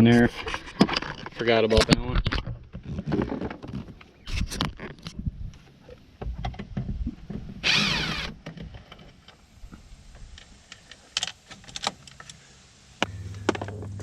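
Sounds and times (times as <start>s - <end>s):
power driver whirring: 7.6s - 8.4s.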